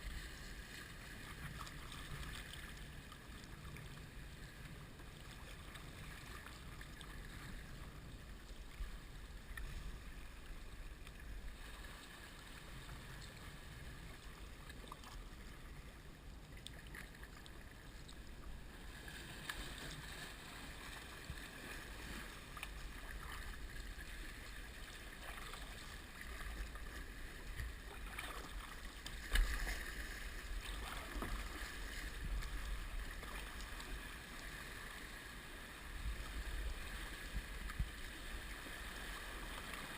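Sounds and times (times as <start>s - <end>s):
water and wind rumble: 0.0s - 39.9s
paddle splashes: 16.7s - 35.0s.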